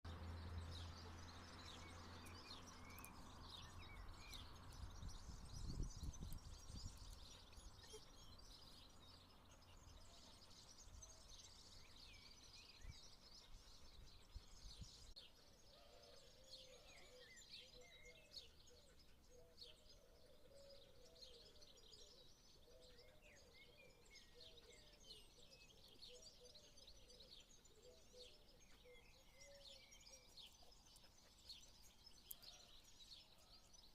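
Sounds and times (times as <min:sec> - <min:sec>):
low warbling birdsong: 0:00.1 - 0:33.9
small birds chirping: 0:00.1 - 0:33.9.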